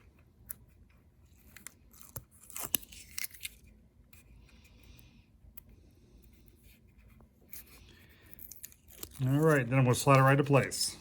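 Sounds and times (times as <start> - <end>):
tape liner crinkles and clicks: 1.3 - 3.7, 8.4 - 9.7.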